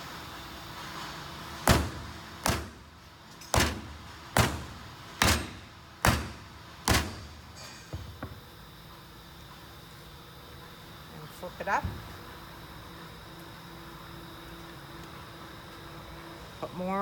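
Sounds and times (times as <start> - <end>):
sharp knocks on metal cap: 3.4 - 7.3.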